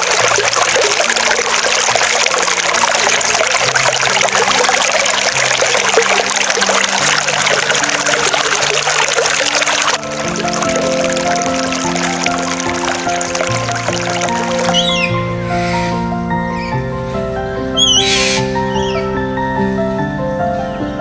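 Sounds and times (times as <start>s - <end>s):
running water: 0.0s - 15.1s
soft background music: 0.0s - 21.0s.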